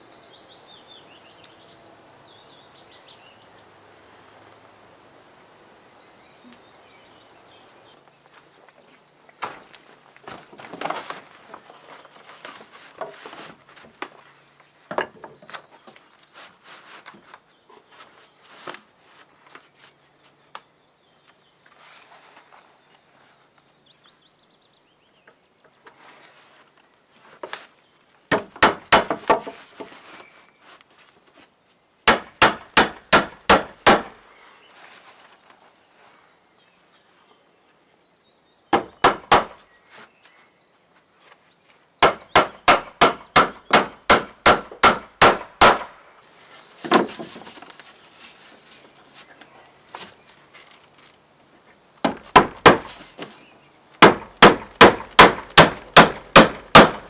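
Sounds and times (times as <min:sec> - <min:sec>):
quiet knocks and handling: 0:14.9 - 0:16.0, 0:46.8 - 0:51.2
hammer driving nails into wood: 0:28.3 - 0:29.5, 0:32.1 - 0:34.2, 0:38.8 - 0:39.6, 0:42.0 - 0:46.0, 0:52.0 - 0:53.0, 0:54.0 - 0:57.0.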